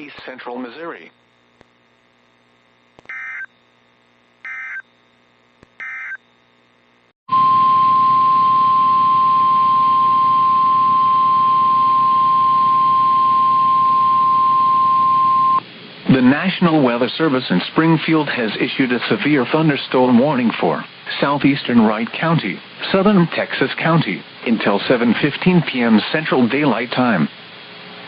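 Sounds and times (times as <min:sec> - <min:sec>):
steady alarm tone: 0:03.1 - 0:03.5, 0:04.4 - 0:04.8, 0:05.8 - 0:06.2, 0:07.3 - 0:15.6.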